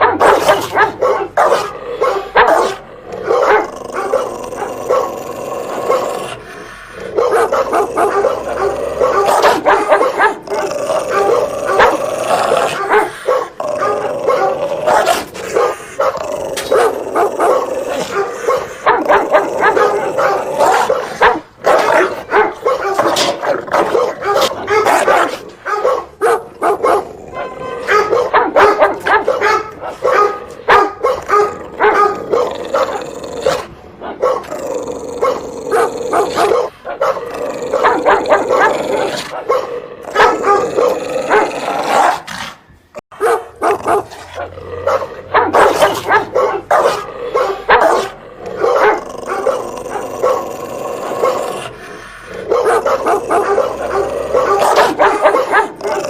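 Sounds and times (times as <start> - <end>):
dog barking: 0.0 - 5.2, 5.8 - 6.2, 7.0 - 34.5, 35.2 - 42.3, 43.1 - 56.0
dog yipping: 24.0 - 32.9.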